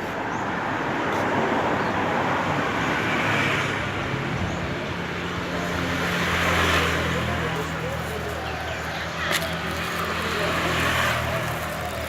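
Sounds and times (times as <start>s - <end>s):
road traffic noise: 0.0s - 12.0s
motor vehicle engine hum: 4.6s - 12.0s.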